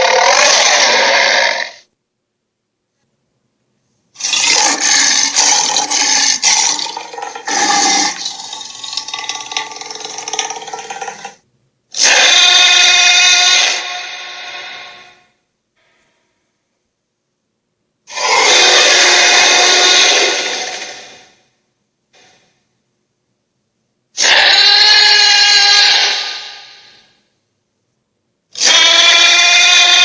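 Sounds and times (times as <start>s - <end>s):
dinosaur roar: 0.0s - 1.9s, 4.2s - 11.4s, 12.0s - 15.3s, 18.1s - 21.4s, 24.2s - 27.1s, 28.6s - 30.0s.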